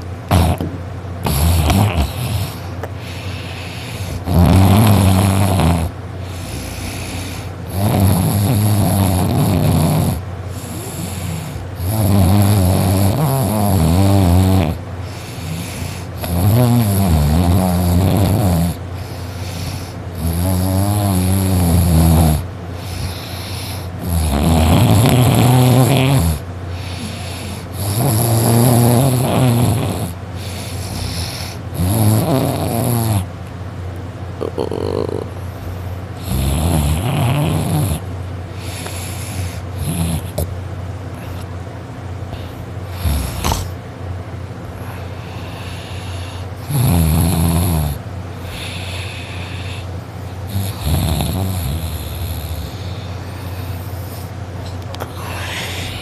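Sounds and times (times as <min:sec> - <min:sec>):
boy snoring loudly: 0:00.3 - 0:02.7, 0:03.5 - 0:33.3, 0:34.4 - 0:35.4, 0:36.2 - 0:38.0, 0:39.8 - 0:40.4, 0:42.9 - 0:43.8, 0:44.8 - 0:49.9, 0:50.5 - 0:53.2
quiet breathing: 0:02.1 - 0:04.3, 0:06.2 - 0:07.7, 0:15.0 - 0:16.2, 0:18.8 - 0:20.2, 0:22.7 - 0:24.0, 0:26.6 - 0:27.8, 0:30.3 - 0:31.8, 0:38.5 - 0:40.3, 0:44.7 - 0:46.7, 0:48.3 - 0:50.5, 0:52.1 - 0:54.4, 0:55.0 - 0:56.0.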